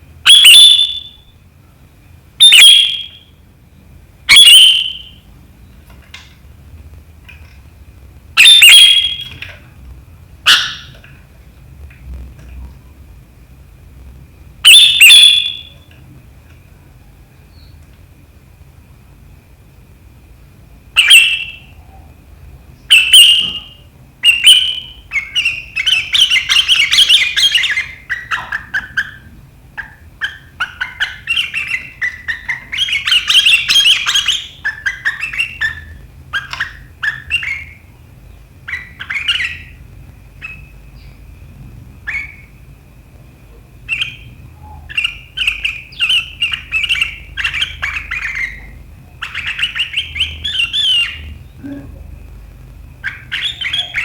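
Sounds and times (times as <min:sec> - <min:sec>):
bird chattering calls: 0:00.2 - 0:01.2, 0:04.3 - 0:05.2, 0:08.4 - 0:09.6, 0:10.4 - 0:11.0, 0:14.6 - 0:15.8, 0:21.0 - 0:21.8, 0:22.9 - 0:38.0, 0:38.6 - 0:39.8, 0:40.4 - 0:41.2, 0:43.9 - 0:51.8, 0:53.0 - 0:54.0.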